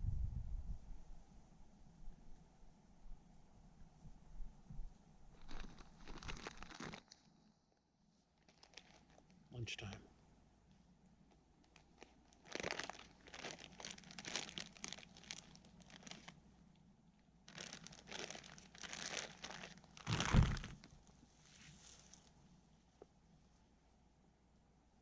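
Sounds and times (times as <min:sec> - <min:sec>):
food wrapper crinkling: 0:05.3 - 0:07.3, 0:08.4 - 0:09.4, 0:11.6 - 0:16.4, 0:17.5 - 0:21.1
heavy thump: 0:20.1 - 0:20.7.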